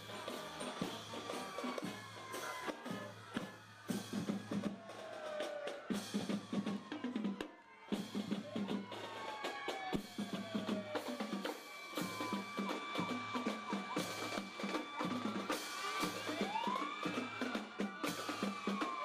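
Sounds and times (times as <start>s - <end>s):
drum-kit beat: 10.0s - 19.0s.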